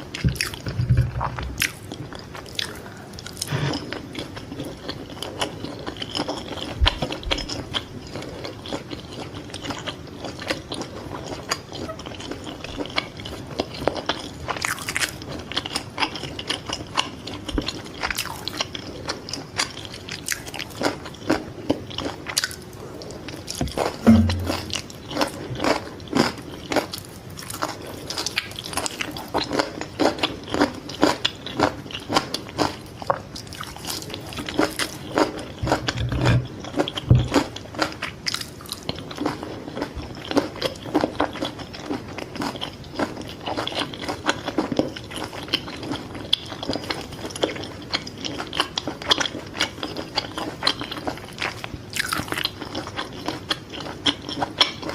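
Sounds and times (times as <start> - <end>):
crunchy chewing: 0.0 - 54.9
low thump: 23.6 - 24.8.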